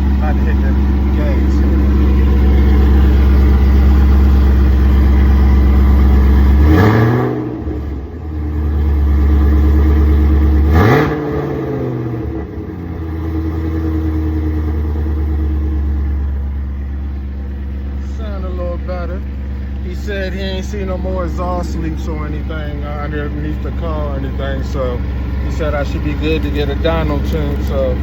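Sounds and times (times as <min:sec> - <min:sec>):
car engine idling and revving: 0:00.0 - 0:28.0.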